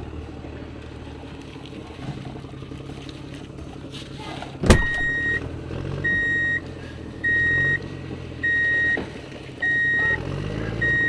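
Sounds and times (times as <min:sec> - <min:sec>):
low engine-like hum: 0:00.0 - 0:11.0
toy truck reversing beeps: 0:04.8 - 0:11.0.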